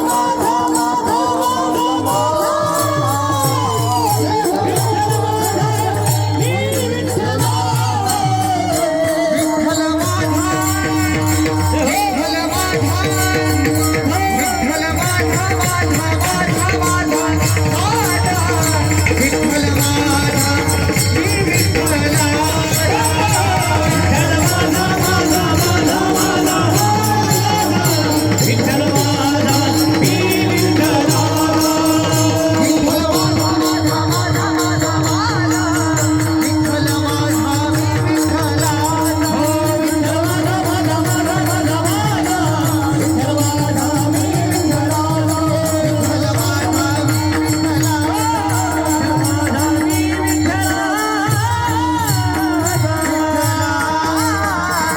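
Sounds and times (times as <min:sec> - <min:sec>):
jingling cymbals: 0:00.0 - 0:54.9
man singing in a high voice: 0:00.0 - 0:54.9
steady held drone: 0:02.8 - 0:47.8
drum beat: 0:10.1 - 0:37.2.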